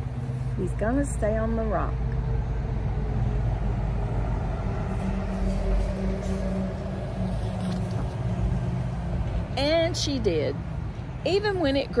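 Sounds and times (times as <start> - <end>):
motor traffic rumble: 0.0 - 12.0.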